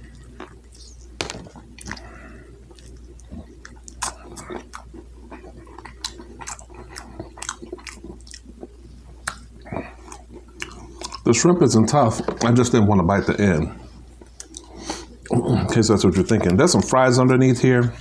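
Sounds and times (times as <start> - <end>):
person chewing with wet smacks: 0.0 - 12.7, 13.4 - 17.0.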